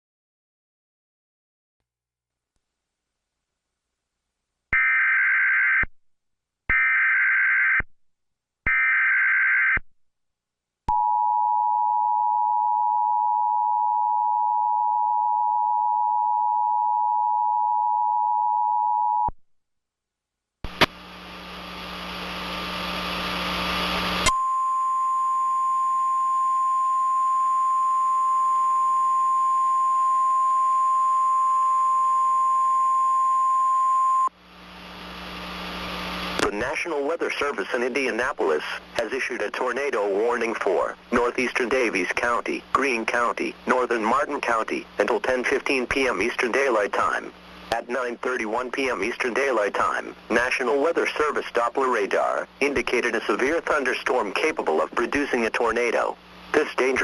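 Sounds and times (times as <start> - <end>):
burst of static: 20.6 - 24.3, 34.5 - 40.0
steady two-tone attention signal: 24.3 - 34.3.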